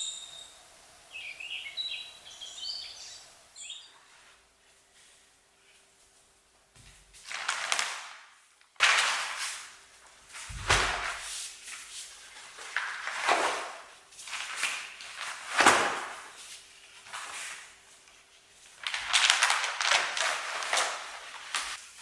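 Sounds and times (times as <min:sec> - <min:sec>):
rustling and scraping: 0:08.8 - 0:22.0.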